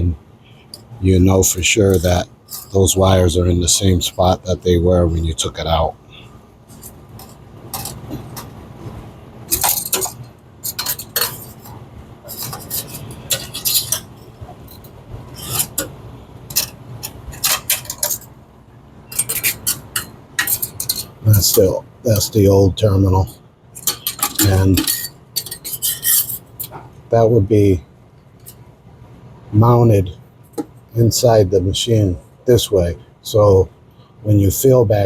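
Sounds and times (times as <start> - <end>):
small metal parts clicking and clinking: 6.7 - 8.5, 9.5 - 11.7, 12.3 - 18.3, 19.1 - 21.6, 23.8 - 26.8.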